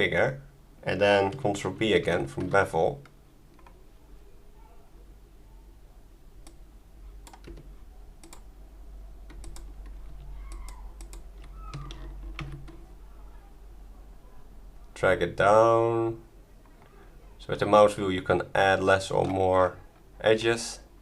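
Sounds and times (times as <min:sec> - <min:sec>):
computer keyboard and mouse clicks: 0:07.2 - 0:08.5, 0:09.3 - 0:12.8.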